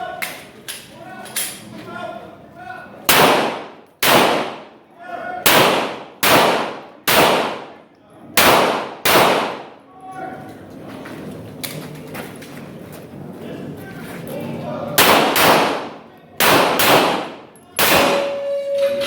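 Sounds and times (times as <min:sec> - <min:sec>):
pistol shots echoing: 0:03.1 - 0:04.8, 0:05.4 - 0:07.8, 0:08.4 - 0:09.8, 0:15.0 - 0:18.4.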